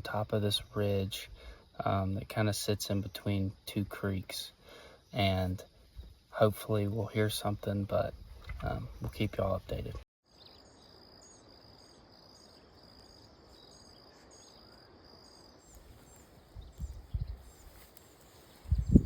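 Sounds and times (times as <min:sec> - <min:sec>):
wind buffets on microphone: 0:16.5 - 0:17.8, 0:18.5 - 0:19.0.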